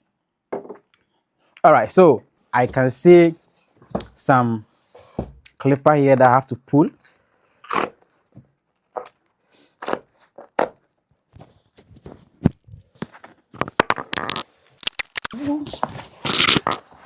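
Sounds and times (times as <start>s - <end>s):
cardboard being torn open: 14.1s - 17.0s.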